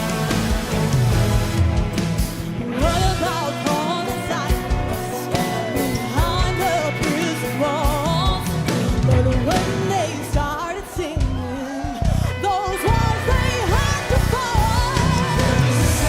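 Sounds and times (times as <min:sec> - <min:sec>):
drum hits: 0:00.0 - 0:03.3
band playing worship music: 0:00.0 - 0:16.0.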